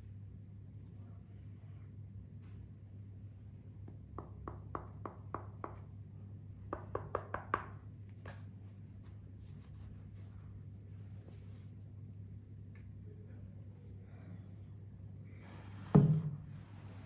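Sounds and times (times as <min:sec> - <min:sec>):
steady low hum: 0:07.8 - 0:17.0.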